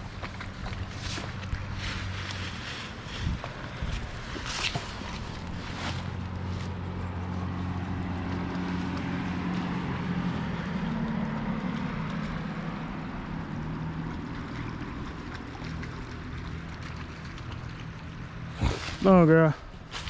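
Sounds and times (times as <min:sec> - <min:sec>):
wind on microphone: 0:00.0 - 0:06.4
motor engine humming: 0:00.0 - 0:20.0.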